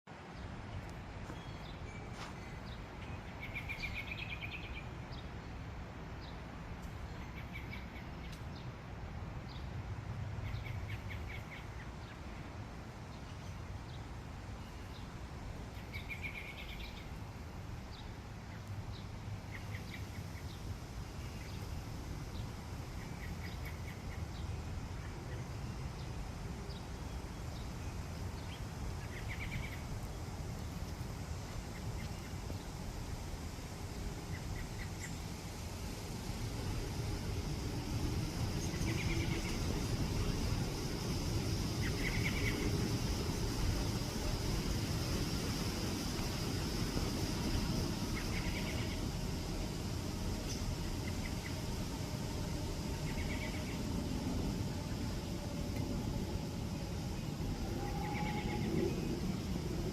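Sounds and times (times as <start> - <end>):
low background rumble: 26.0 - 59.9
birds chirping: 34.1 - 59.9.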